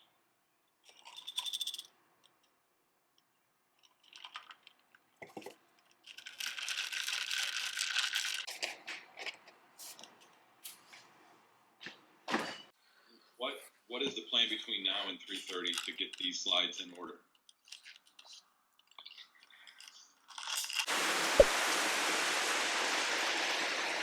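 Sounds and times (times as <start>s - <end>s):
small objects clicking and knocking: 0.8s - 10.3s, 17.3s - 20.9s.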